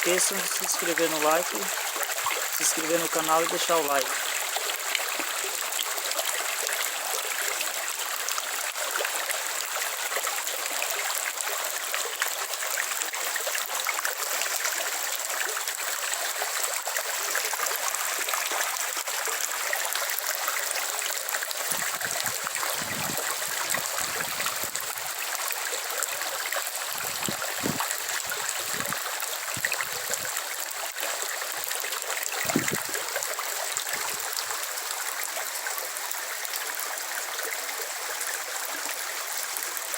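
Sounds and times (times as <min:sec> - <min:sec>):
rain falling: 0:00.0 - 0:07.4.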